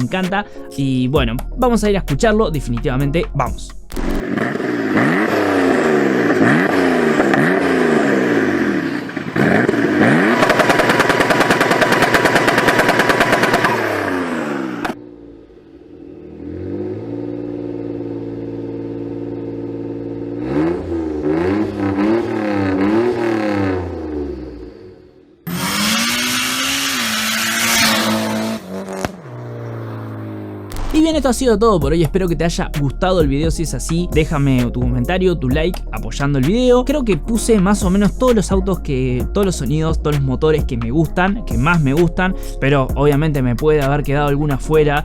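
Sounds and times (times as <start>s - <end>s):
car engine revving: 3.9s - 32.9s.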